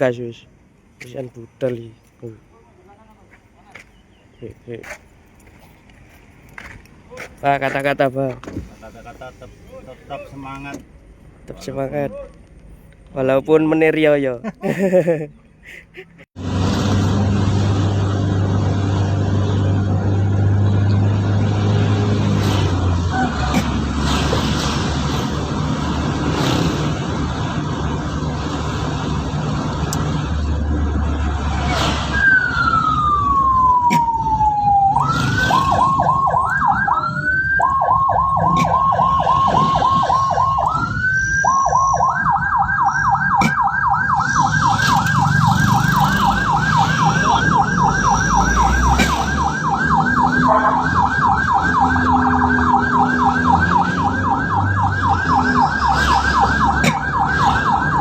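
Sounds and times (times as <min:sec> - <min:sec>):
road and engine noise: 0:00.0 - 0:58.0
ambulance siren: 0:19.0 - 0:25.2, 0:31.2 - 0:58.0.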